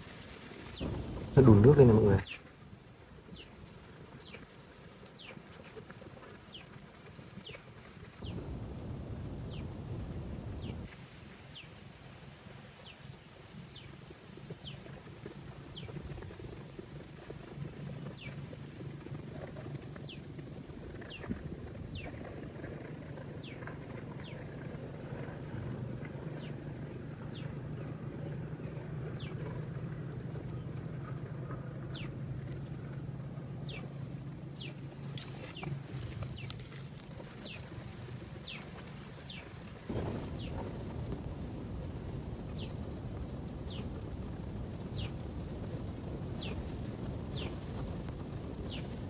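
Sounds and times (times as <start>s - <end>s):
steady low hum: 0.7s - 3.8s, 8.2s - 10.9s.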